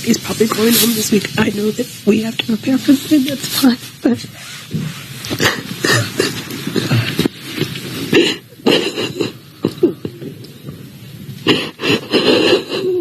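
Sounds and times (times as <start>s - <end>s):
woman crying: 8.1s - 10.4s, 11.5s - 13.0s.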